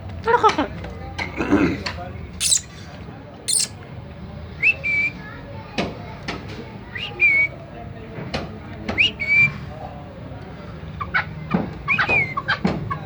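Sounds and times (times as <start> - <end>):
bird whistled call: 2.4 - 2.7, 3.5 - 3.7.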